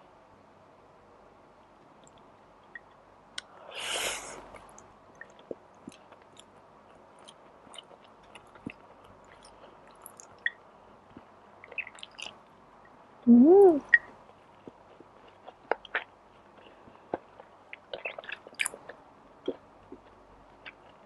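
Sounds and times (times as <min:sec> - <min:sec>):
close-miked chewing: 0:04.5 - 0:12.5, 0:13.9 - 0:21.0
person humming: 0:13.3 - 0:13.9.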